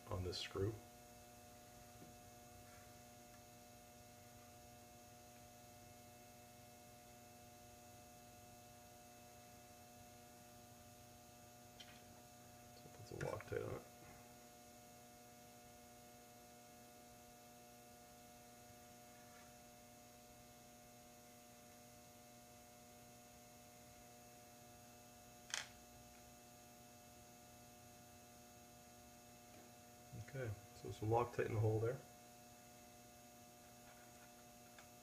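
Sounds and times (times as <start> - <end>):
steady electrical hum: 0.0 - 35.0.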